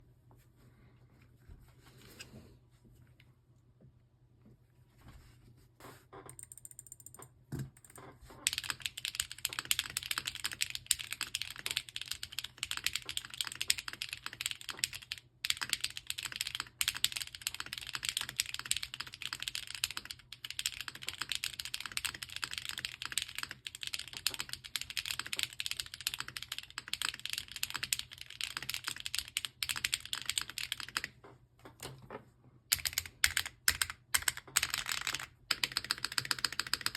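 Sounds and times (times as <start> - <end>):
mechanical keyboard typing: 6.3 - 31.2, 32.7 - 36.9.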